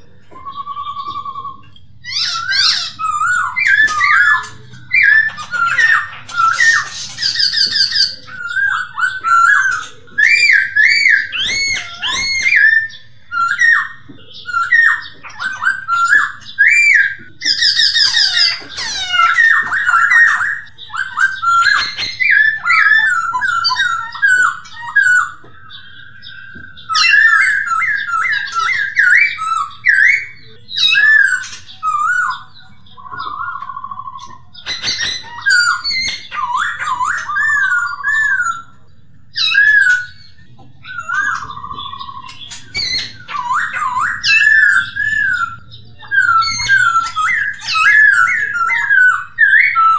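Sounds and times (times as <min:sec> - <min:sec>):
bird chattering notes: 0:00.0 - 0:49.9
bird singing whistled phrases: 0:00.0 - 0:49.9.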